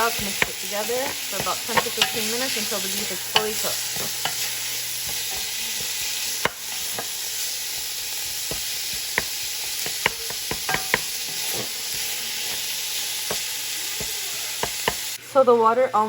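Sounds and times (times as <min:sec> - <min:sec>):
meat sizzling in a pot: 0:00.0 - 0:15.4
utensil clicking against pot: 0:03.3 - 0:15.1.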